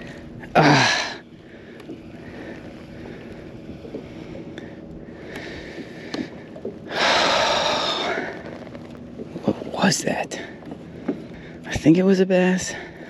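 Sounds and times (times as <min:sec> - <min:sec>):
water washing: 0:00.0 - 0:11.8
faint clicks: 0:01.7 - 0:06.9.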